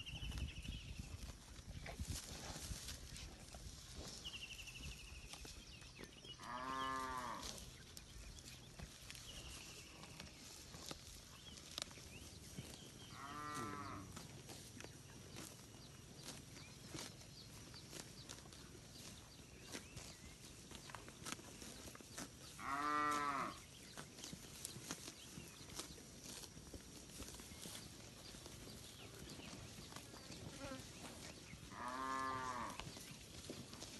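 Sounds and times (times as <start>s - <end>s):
cattle mooing: 13.1s - 14.1s, 22.6s - 23.6s, 31.7s - 32.8s.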